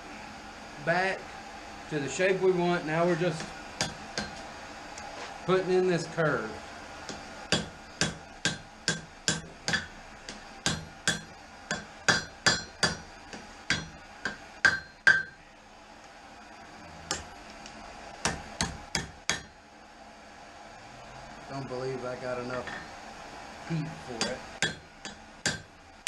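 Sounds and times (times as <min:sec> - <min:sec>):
hammer striking steel on anvil: 0:03.4 - 0:04.4, 0:07.1 - 0:15.4, 0:18.2 - 0:19.6, 0:22.6 - 0:22.9, 0:24.2 - 0:25.7.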